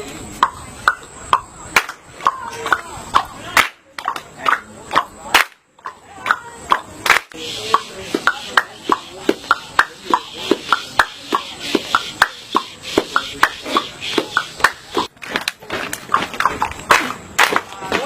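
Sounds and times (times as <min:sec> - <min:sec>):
group clapping a beat: 0:01.8 - 0:18.0.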